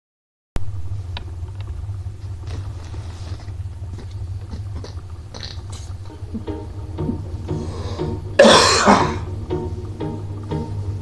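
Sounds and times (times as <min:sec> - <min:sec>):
steady low rumble: 0:00.6 - 0:11.0.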